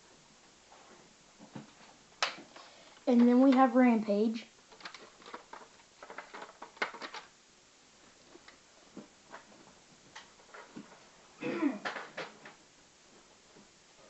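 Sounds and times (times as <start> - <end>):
person clearing throat: 11.4 - 11.9.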